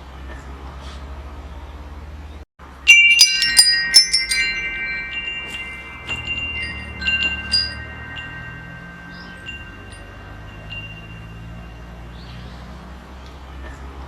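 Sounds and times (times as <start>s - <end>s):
metal wind chime ringing: 2.8s - 12.3s.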